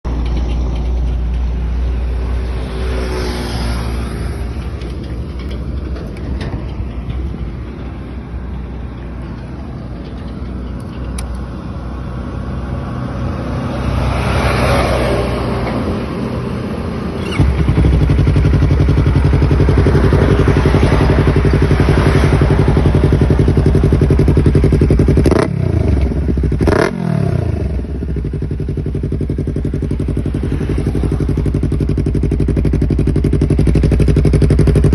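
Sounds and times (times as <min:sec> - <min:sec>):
motorcycle engine idling: 0:17.2 - 0:26.8, 0:27.6 - 0:34.9.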